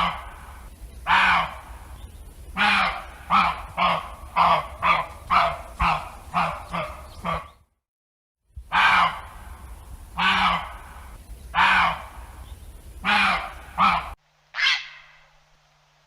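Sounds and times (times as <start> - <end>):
duck quacking harshly: 1.1 - 1.6, 2.6 - 7.5, 8.7 - 9.2, 10.2 - 10.8, 11.6 - 12.1, 13.0 - 15.2.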